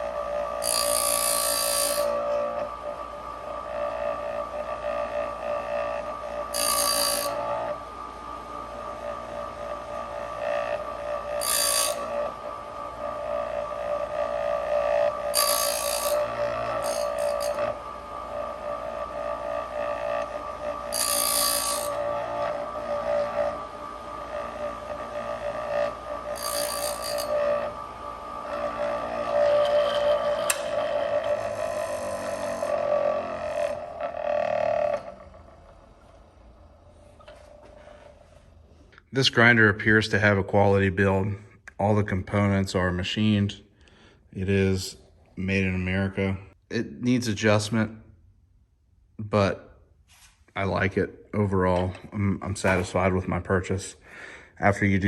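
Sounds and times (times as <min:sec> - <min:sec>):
grinding wheel hissing on metal: 0:00.0 - 0:35.7
grinder motor whine: 0:00.0 - 0:38.2.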